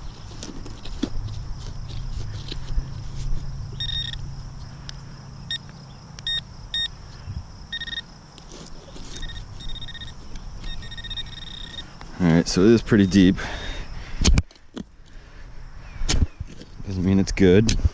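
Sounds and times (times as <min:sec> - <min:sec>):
digging knocks and rumble: 0:00.0 - 0:04.9, 0:16.0 - 0:17.9
metal detector short beeps: 0:03.8 - 0:04.2, 0:05.5 - 0:07.0, 0:07.7 - 0:08.1, 0:09.1 - 0:11.9.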